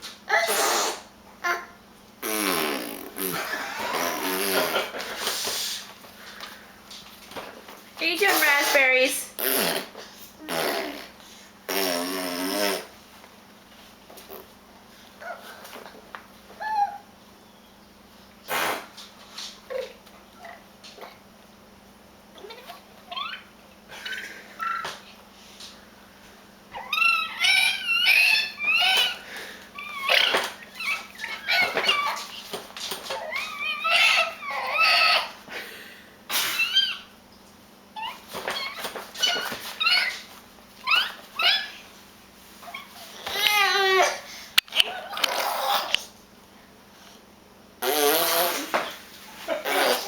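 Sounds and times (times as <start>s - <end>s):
baby squealing and babbling: 0.3s - 1.7s, 26.8s - 29.2s, 29.8s - 32.3s, 33.1s - 35.4s, 38.0s - 41.8s, 42.6s - 46.0s
baby babbling and squealing: 26.8s - 29.2s.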